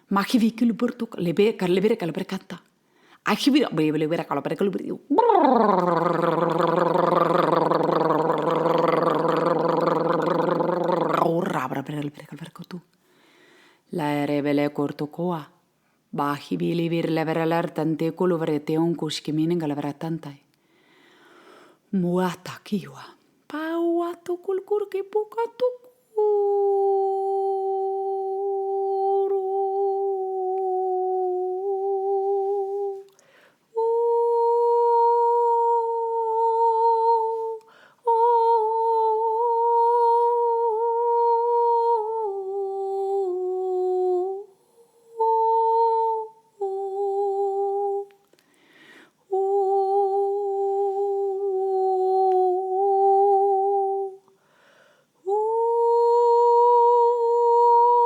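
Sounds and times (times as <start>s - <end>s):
woman humming: 5.1s - 11.8s, 26.2s - 33.1s
quick breath: 13.0s - 13.8s, 20.6s - 21.8s, 33.2s - 33.7s, 48.4s - 49.2s, 54.4s - 55.2s.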